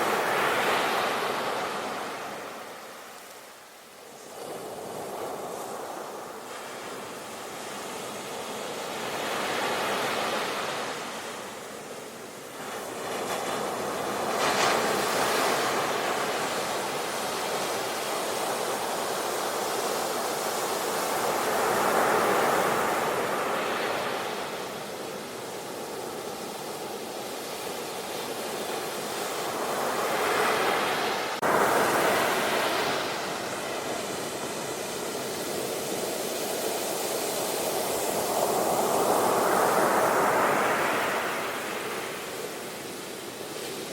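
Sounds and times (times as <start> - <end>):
ocean waves breaking: 12.5 - 43.9.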